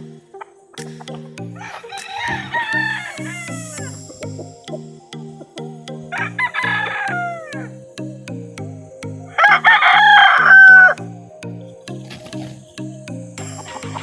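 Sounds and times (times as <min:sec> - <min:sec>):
background music with beat: 0:00.0 - 0:14.0
rooster crowing: 0:01.6 - 0:03.8, 0:06.2 - 0:07.7, 0:09.4 - 0:11.0.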